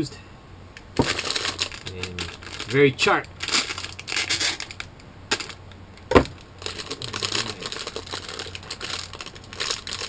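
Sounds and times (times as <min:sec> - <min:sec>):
light rattling and crinkling: 0:01.0 - 0:10.0.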